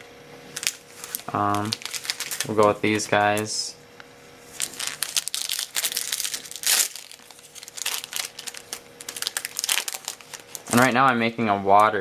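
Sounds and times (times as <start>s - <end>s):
foil wrapper crinkling and tearing: 0.5s - 3.5s, 4.5s - 11.1s.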